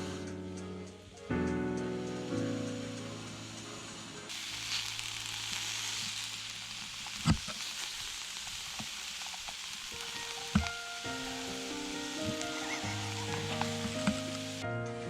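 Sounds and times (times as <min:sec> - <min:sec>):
meat sizzling in a pan: 0:00.0 - 0:14.7.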